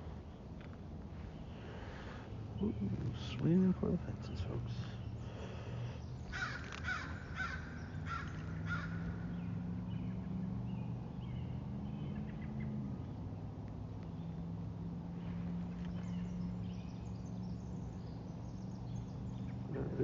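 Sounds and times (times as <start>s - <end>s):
steady low hum: 0.0s - 20.0s
bird harsh calls: 1.3s - 12.8s.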